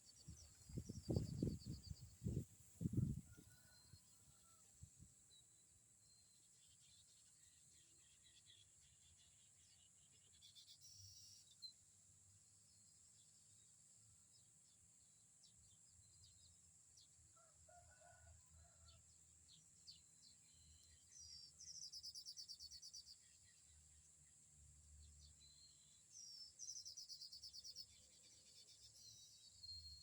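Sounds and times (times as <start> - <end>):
low wind rumble: 0.4 - 3.4.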